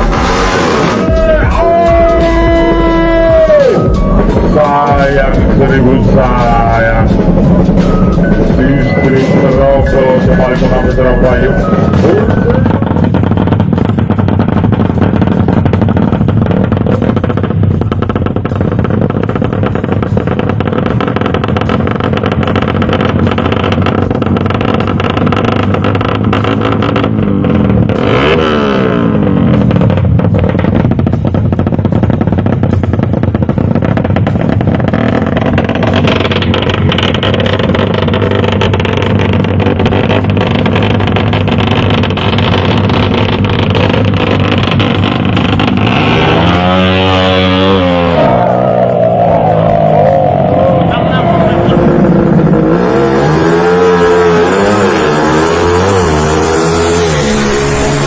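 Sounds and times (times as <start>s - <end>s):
motorcycle engines running: 0.0s - 58.0s
motorcycle passing by: 20.1s - 30.2s, 33.9s - 58.0s.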